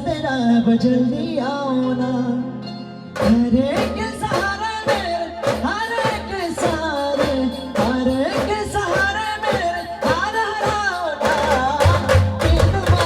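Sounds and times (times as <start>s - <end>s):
steady drum beat: 3.2s - 13.0s.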